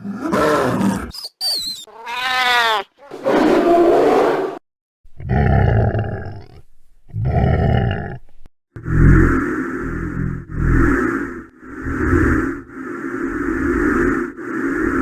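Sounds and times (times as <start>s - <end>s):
creature rough roaring breaths: 8.8s - 15.0s.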